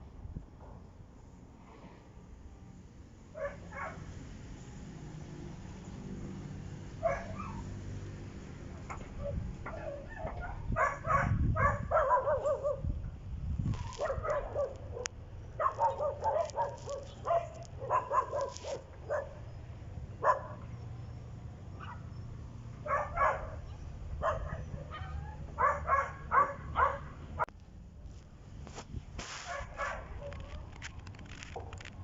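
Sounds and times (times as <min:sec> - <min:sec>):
dog barking and yipping: 0:03.4 - 0:04.1, 0:07.0 - 0:07.8, 0:09.2 - 0:12.8, 0:13.8 - 0:19.6, 0:20.2 - 0:20.7, 0:21.8 - 0:22.2, 0:22.8 - 0:27.5, 0:29.5 - 0:30.6.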